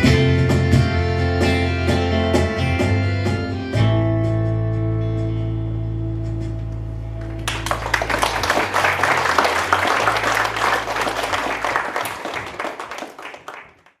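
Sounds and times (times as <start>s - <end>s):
guitars and bass chord ringing: 0.0s - 8.0s
audience applauding: 7.2s - 14.0s.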